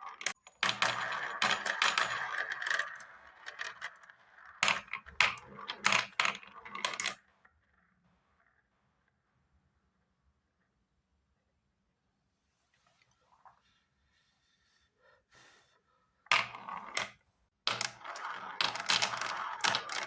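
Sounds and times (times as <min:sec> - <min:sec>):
marbles rolling down marble run: 0:00.0 - 0:08.7, 0:16.3 - 0:20.0.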